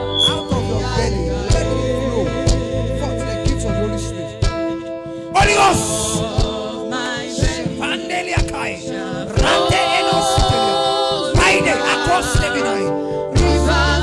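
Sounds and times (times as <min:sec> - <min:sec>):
soft low thumps: 0:00.0 - 0:04.7
keyboard chords: 0:00.0 - 0:14.0
voices singing gospel: 0:00.0 - 0:14.0.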